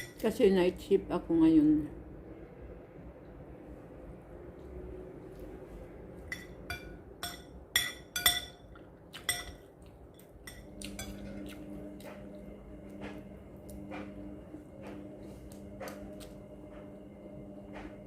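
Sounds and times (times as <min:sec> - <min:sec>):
steady low hum: 0:00.0 - 0:18.0
utensils clinking against dish: 0:06.3 - 0:11.5.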